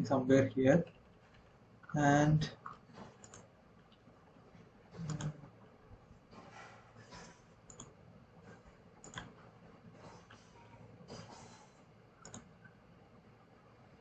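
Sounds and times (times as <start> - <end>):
mouse and keyboard clicks: 2.6 - 3.5, 7.7 - 7.9, 9.0 - 9.4, 12.2 - 12.5.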